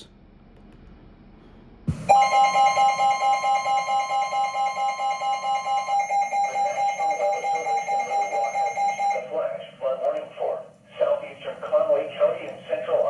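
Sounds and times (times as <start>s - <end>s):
pulsing high alarm tone: 1.9s - 9.4s
radio click: 10.0s - 10.3s.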